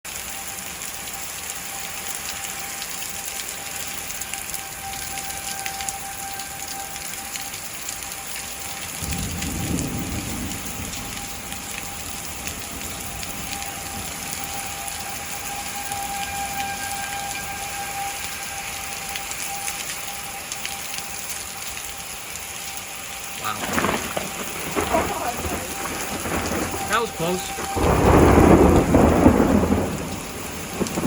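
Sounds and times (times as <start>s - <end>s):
distant warning siren: 0.1s - 31.0s
heavy rain hissing: 0.1s - 31.0s
thunder rumble: 8.8s - 19.6s, 23.4s - 31.0s.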